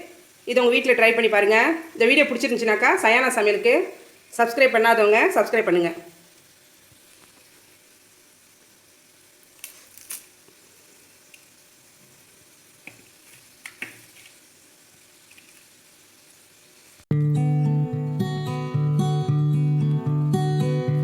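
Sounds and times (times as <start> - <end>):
faint hiss: 0.0 - 17.1.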